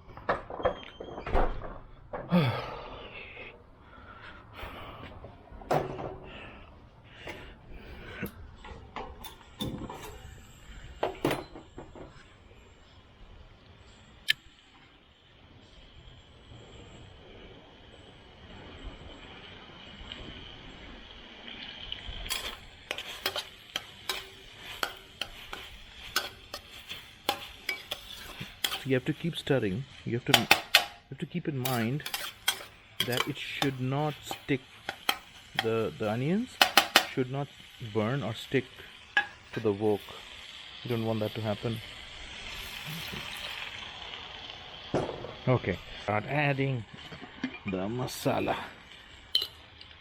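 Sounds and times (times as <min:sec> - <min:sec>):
onions sizzling: 0:09.2 - 0:11.2, 0:12.2 - 0:50.0
utensil scraping a wok: 0:09.2 - 0:11.2, 0:22.2 - 0:44.3
sharp kitchen knocks: 0:30.4 - 0:31.0.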